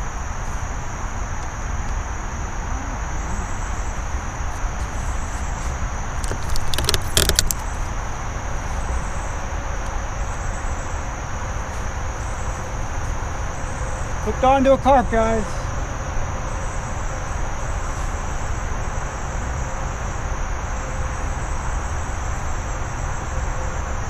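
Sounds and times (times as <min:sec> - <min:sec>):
night insects chorus: 0:00.0 - 0:24.0
rapid clicking: 0:06.2 - 0:07.6.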